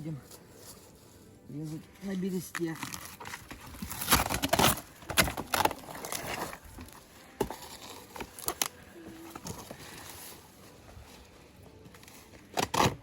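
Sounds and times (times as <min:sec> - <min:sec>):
dry bark crackling and snapping: 0:01.6 - 0:10.3.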